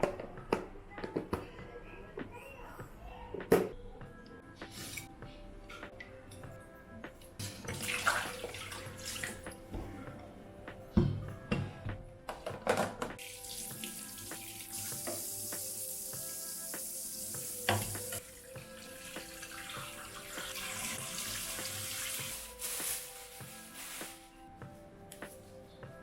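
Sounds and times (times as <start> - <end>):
soft background music: 0.0 - 26.0
tap water running into sink: 7.4 - 9.4, 13.2 - 22.4.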